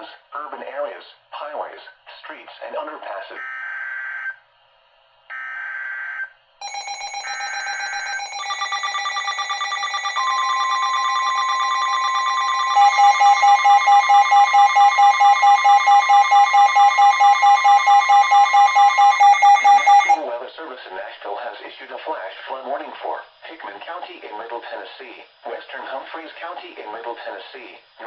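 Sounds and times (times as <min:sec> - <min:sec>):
electronic alarm tones: 0:06.6 - 0:20.2
loud beeping pulse: 0:06.6 - 0:20.2.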